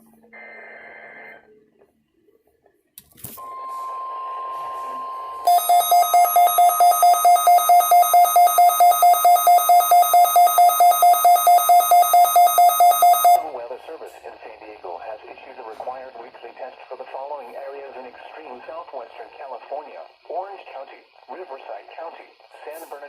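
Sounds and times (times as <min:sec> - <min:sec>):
electronic alarm beeping: 0:03.4 - 0:13.6.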